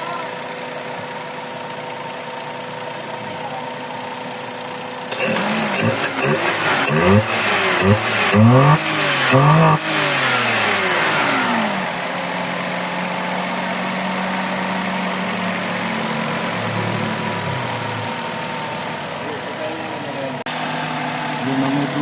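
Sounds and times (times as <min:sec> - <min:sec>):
car engine revving and idling: 0:00.0 - 0:22.0.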